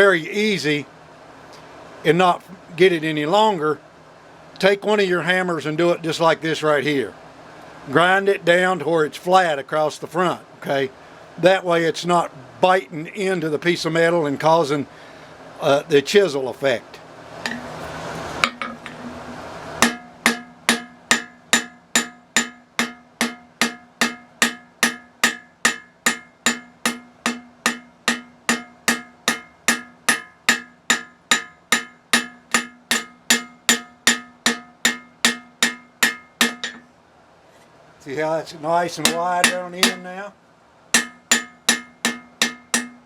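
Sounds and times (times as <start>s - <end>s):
hammer striking steel on anvil: 17.4s - 17.8s, 18.4s - 19.1s, 19.8s - 36.9s, 39.0s - 40.1s, 41.0s - 43.0s.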